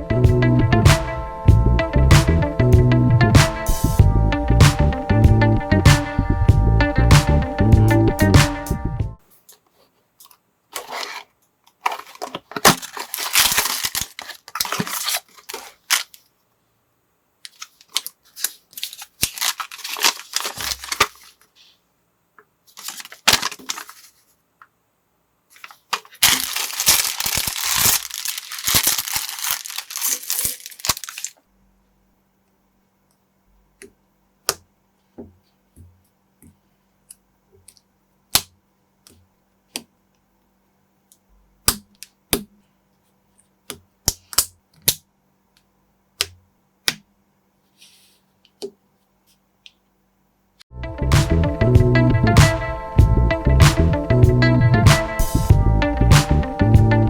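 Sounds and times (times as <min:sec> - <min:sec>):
plastic packaging crinkling: 0:10.7 - 0:16.3, 0:17.4 - 0:21.5, 0:22.7 - 0:24.3, 0:25.5 - 0:31.4.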